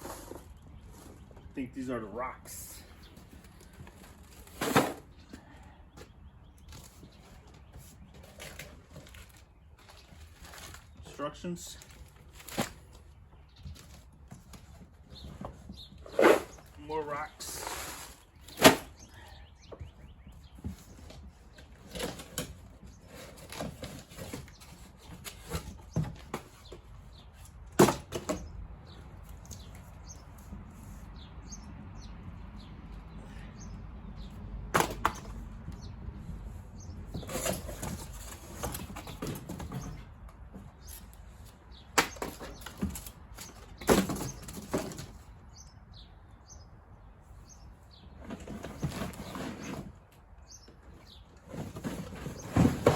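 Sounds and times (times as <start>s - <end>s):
cardboard and plastic rustling: 3.0s - 19.1s, 19.7s - 28.4s, 37.0s - 45.4s, 48.1s - 52.9s.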